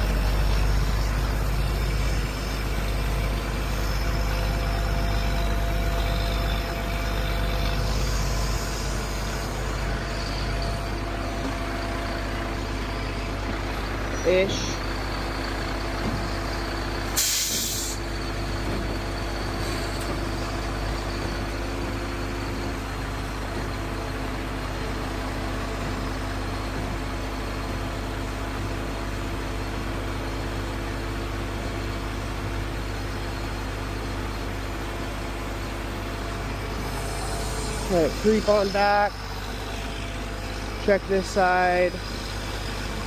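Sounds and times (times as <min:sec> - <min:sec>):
diesel engine idling: 0:00.0 - 0:43.0
air hiss: 0:17.1 - 0:18.1, 0:36.7 - 0:40.0.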